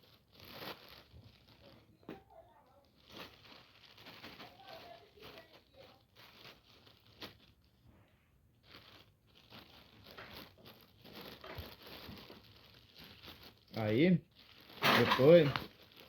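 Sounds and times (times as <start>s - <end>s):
soap shavings crinkling and scraping: 8.6s - 16.0s.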